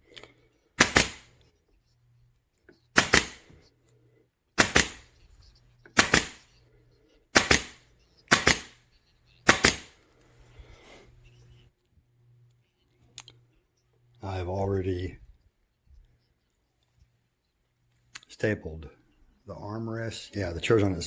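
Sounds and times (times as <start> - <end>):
pneumatic stapler firing: 0.8 - 1.3, 3.0 - 3.4, 4.6 - 5.0, 6.0 - 6.4.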